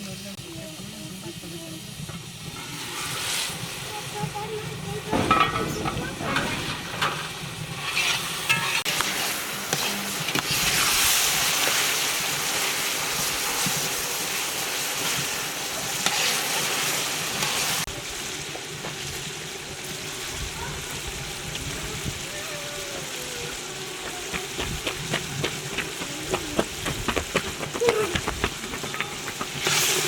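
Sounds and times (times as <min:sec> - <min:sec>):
food sizzling in a hot pan: 0:00.0 - 0:28.0, 0:28.8 - 0:30.0
stirring knocks and scrapes: 0:05.1 - 0:09.0.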